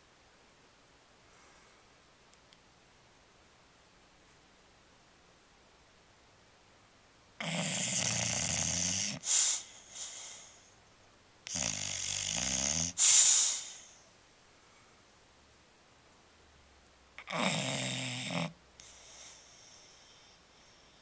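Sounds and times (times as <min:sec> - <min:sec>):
dog snoring: 0:07.4 - 0:10.6, 0:11.5 - 0:14.0, 0:17.2 - 0:21.0.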